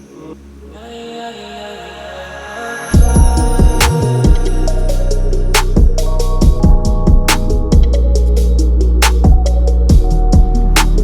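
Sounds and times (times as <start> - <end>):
electronic music: 1.6 - 11.0.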